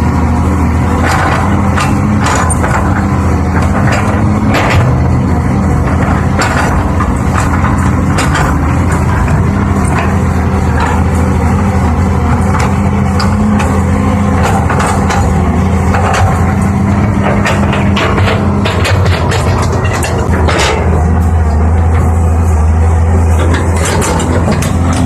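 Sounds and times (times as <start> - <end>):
diesel machinery engine running: 0.0 - 25.0
metal knocks and clanks: 0.6 - 25.0.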